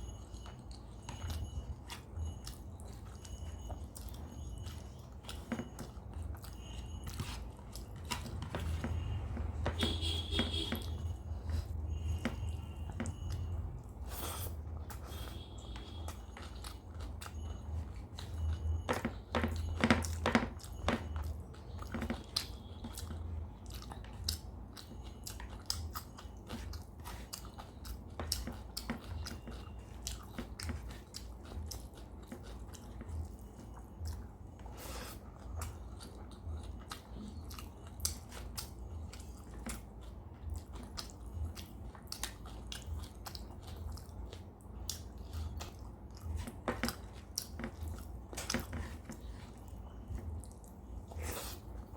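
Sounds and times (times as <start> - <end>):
chewing and biting food: 0.0 - 51.9.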